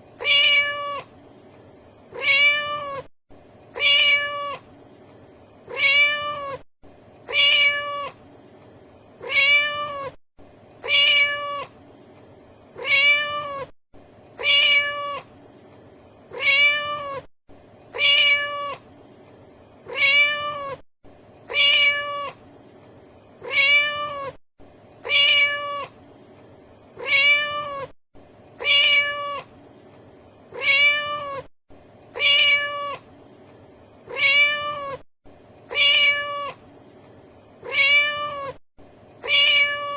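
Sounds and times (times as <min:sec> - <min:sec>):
cat meowing: 0:00.2 - 0:01.1, 0:02.1 - 0:03.1, 0:03.8 - 0:04.6, 0:05.7 - 0:06.6, 0:07.3 - 0:08.2, 0:09.2 - 0:10.2, 0:10.8 - 0:11.8, 0:12.8 - 0:13.7, 0:14.4 - 0:15.3, 0:16.3 - 0:17.3, 0:17.9 - 0:18.8, 0:19.9 - 0:20.8, 0:21.5 - 0:22.4, 0:23.4 - 0:24.4, 0:25.0 - 0:26.0, 0:27.0 - 0:28.0, 0:28.6 - 0:29.5, 0:30.5 - 0:31.5, 0:32.2 - 0:33.1, 0:34.1 - 0:35.0, 0:35.7 - 0:36.6, 0:37.6 - 0:38.6, 0:39.2 - 0:39.9.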